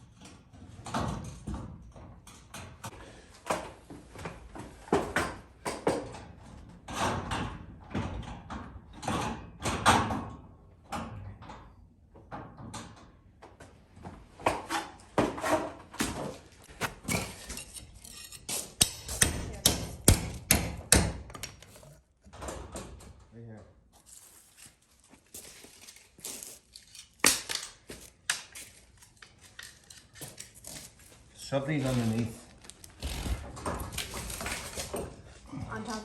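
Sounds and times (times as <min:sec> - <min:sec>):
hammering on wood: 0:18.8 - 0:21.5.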